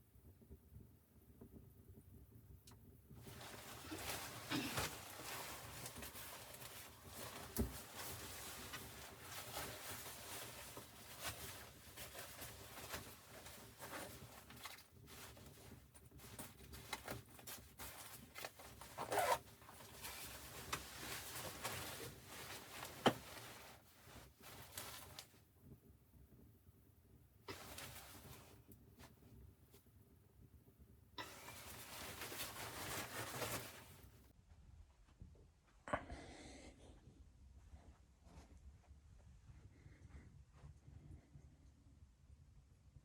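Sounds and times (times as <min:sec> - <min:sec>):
rustling and handling noises: 0:03.1 - 0:25.5, 0:27.4 - 0:29.9, 0:31.2 - 0:34.3.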